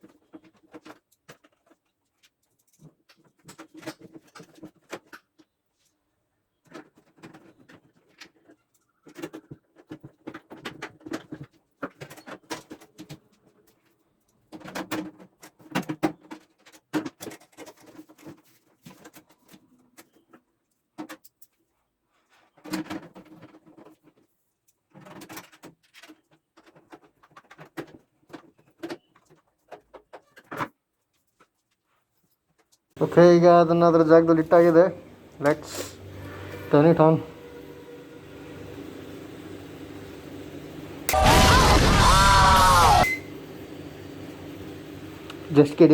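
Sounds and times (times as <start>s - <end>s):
clicks and rattles of metal parts: 14.3s - 20.1s, 22.6s - 30.7s.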